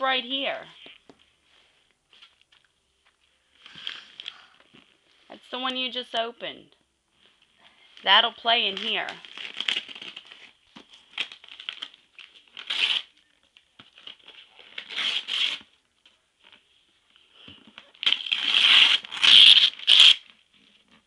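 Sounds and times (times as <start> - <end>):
wrapping paper tearing: 8.8 - 13.2, 14.0 - 15.7, 17.9 - 20.4.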